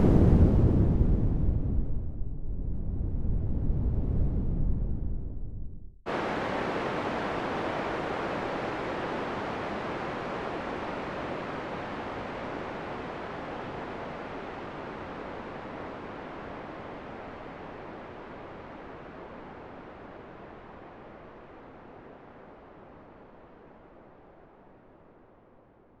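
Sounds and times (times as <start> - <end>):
wind rushing: 0.0 - 16.0.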